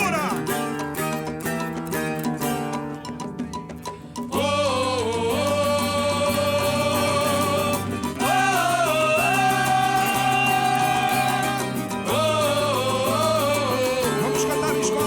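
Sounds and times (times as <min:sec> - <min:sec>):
samba band playing: 0:00.0 - 0:13.6
person singing long held notes: 0:04.4 - 0:15.0.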